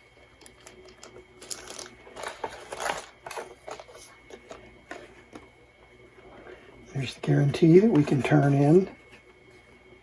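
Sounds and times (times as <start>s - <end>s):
paper and cardboard rustling: 1.4s - 5.1s.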